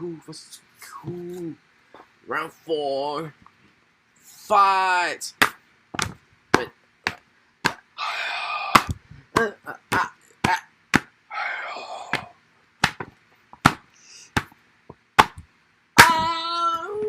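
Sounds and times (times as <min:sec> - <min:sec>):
sharp hit smacks: 0:08.7 - 0:11.1.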